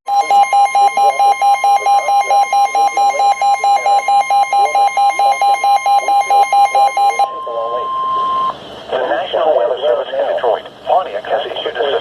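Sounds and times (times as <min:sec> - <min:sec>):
steady high alert tone: 0:00.1 - 0:08.6
broadcast voice: 0:00.1 - 0:12.0.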